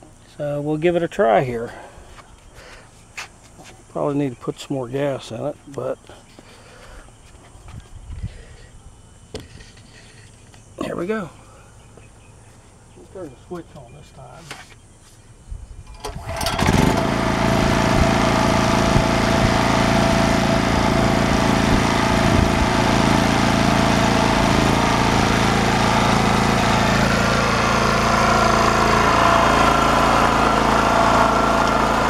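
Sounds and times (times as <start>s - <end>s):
generator engine running: 15.9s - 32.0s.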